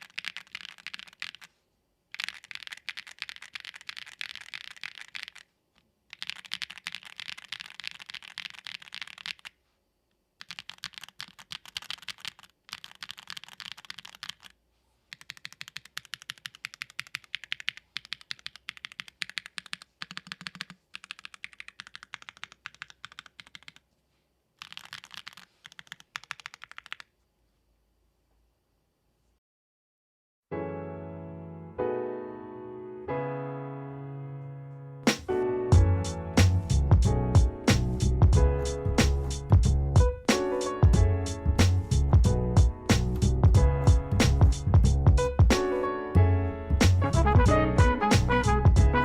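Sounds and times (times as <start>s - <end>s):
mechanical keyboard typing: 0.0s - 1.5s, 2.1s - 5.5s, 6.1s - 9.5s, 10.4s - 14.5s, 15.1s - 23.8s, 24.6s - 27.1s.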